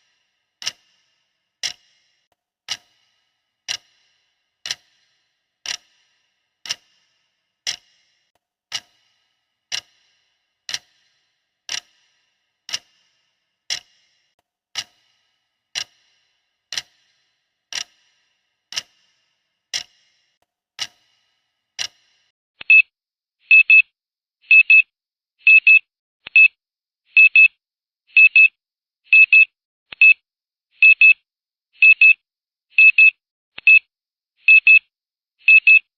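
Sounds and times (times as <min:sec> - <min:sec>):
timer ticking: 0:00.0 - 0:22.9.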